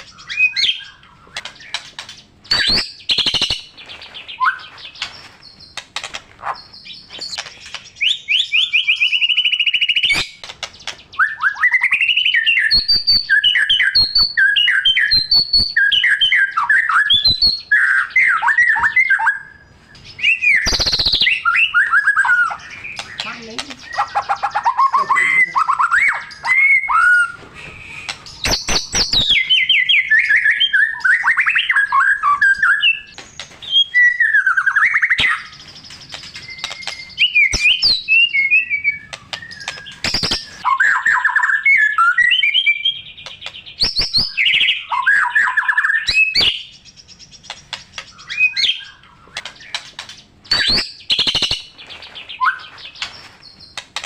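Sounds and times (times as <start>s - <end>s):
sharp bird clicks: 0.0s - 14.4s, 20.0s - 24.9s, 27.8s - 29.5s, 35.0s - 40.6s, 43.0s - 44.7s, 46.0s - 51.8s, 52.8s - 54.0s
songbird singing varied song: 0.0s - 53.9s.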